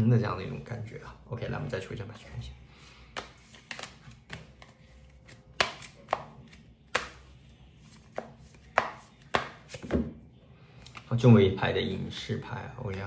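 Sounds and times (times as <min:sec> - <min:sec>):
cards shuffled on a table: 0:02.8 - 0:10.0.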